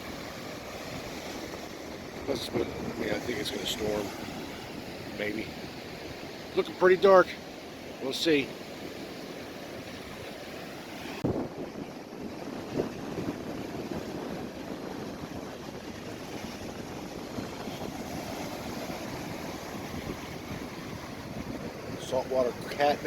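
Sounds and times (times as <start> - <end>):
wind on microphone: 0.0 - 6.5, 8.5 - 23.0
surf washing onto beach: 0.0 - 23.0.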